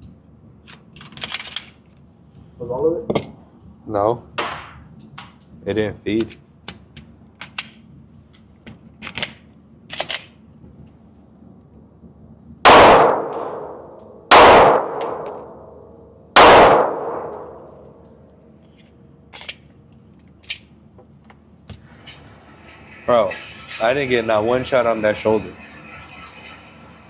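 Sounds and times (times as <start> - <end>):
handgun shots echoing: 12.7 - 17.8.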